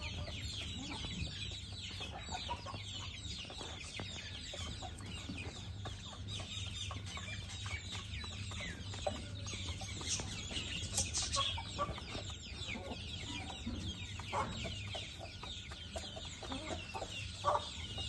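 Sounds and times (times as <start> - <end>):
parakeets chattering: 0.0 - 18.0.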